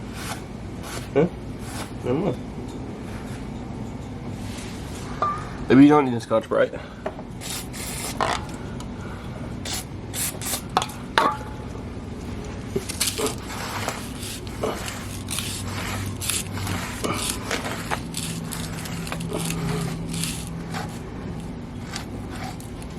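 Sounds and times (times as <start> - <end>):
cloth rubbing on metal: 12.8 - 22.9.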